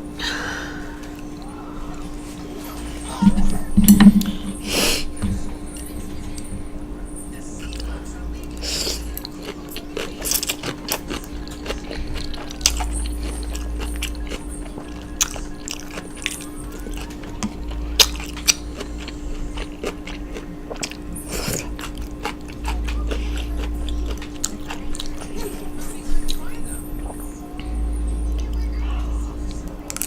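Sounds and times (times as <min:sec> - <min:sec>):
steady hum: 0:00.0 - 0:30.0
person chewing crunchy food: 0:07.7 - 0:27.3.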